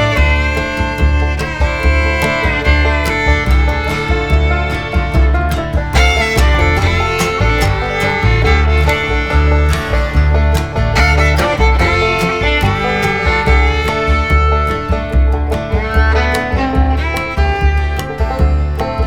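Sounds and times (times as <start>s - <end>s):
bluegrass music with fiddle and guitar: 0.0s - 19.0s.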